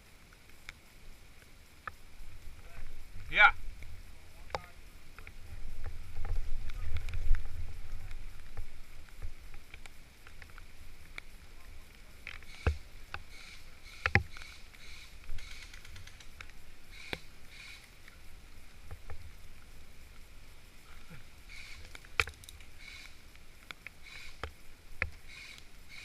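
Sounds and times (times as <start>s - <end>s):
rustling against microphone: 1.9s - 25.6s
sharp clicks: 12.2s - 18.2s.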